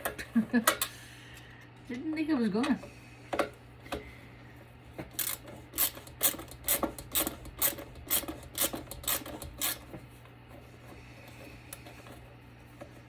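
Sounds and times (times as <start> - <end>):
screwdriver scraping rusted screw: 5.2 - 9.9.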